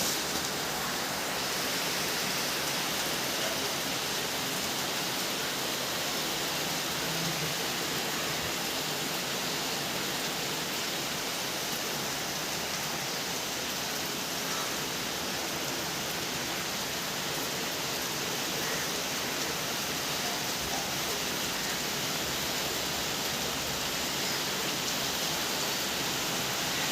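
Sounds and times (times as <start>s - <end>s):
steady rainfall: 0.0s - 26.9s.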